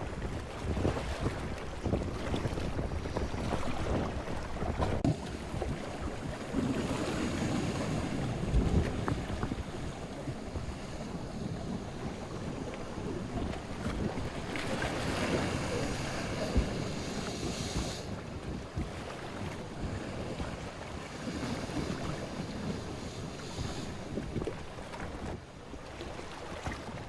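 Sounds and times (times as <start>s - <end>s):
ocean waves: 0.0s - 27.0s
wind buffeting microphone: 0.0s - 27.0s
hiss of water: 15.2s - 18.2s, 21.2s - 24.2s.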